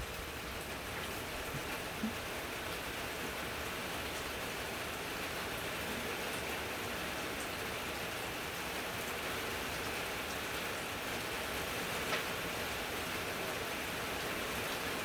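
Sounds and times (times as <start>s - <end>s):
steady rain hiss: 0.0s - 15.0s
faint raindrop ticks: 12.0s - 12.4s.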